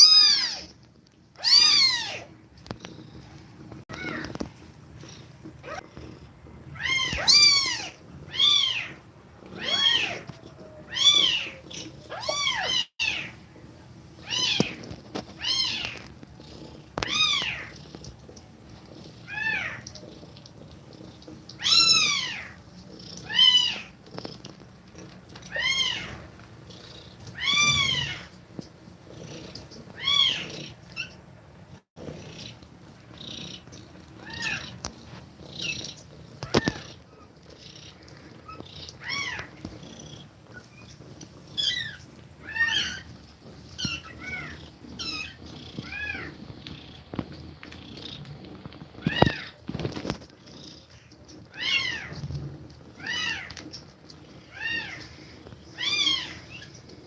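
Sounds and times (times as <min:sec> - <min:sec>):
kittens mewing: 0:05.6 - 0:13.4, 0:19.0 - 0:20.1, 0:21.6 - 0:24.0, 0:25.4 - 0:26.3, 0:27.3 - 0:28.4, 0:29.2 - 0:31.2, 0:32.1 - 0:37.3, 0:43.8 - 0:46.4, 0:49.0 - 0:49.6.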